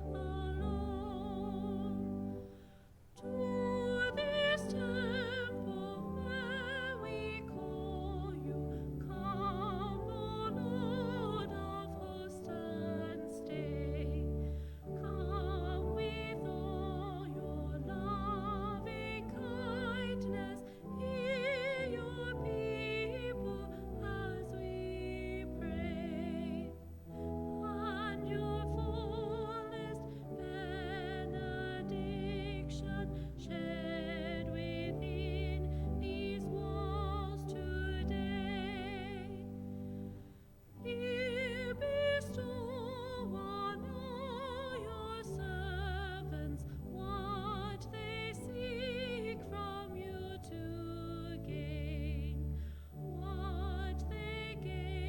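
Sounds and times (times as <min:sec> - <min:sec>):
person singing a hymn with vibrato: 0:00.0 - 0:55.0
sustained accompaniment chords: 0:03.2 - 0:55.0.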